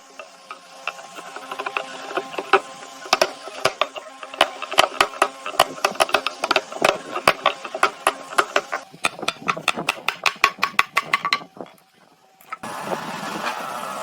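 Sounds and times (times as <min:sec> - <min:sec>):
steady machine noise: 0:00.0 - 0:14.0
rapid sharp knocks: 0:00.8 - 0:11.5.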